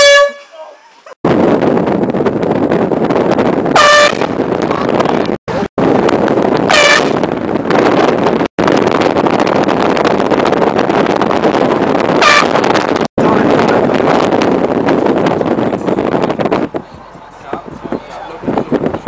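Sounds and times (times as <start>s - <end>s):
air horn blasts: 0.0s - 0.6s, 3.8s - 4.4s, 6.7s - 7.3s, 12.2s - 12.6s
loud steady rushing noise: 1.3s - 19.0s.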